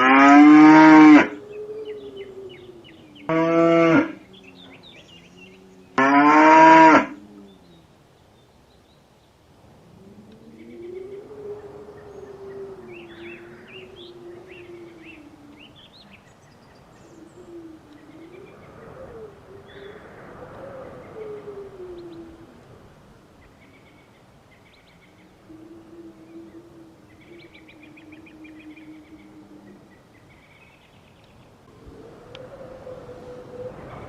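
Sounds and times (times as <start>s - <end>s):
cows mooing: 0.0s - 1.4s, 3.3s - 4.2s, 6.0s - 7.2s
small birds chirping: 4.1s - 6.0s, 10.6s - 21.4s.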